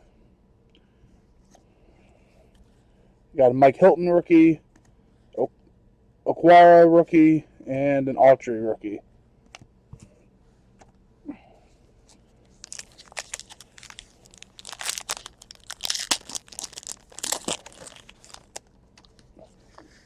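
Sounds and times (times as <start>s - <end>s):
foil wrapper tearing and crinkling: 12.5s - 19.2s.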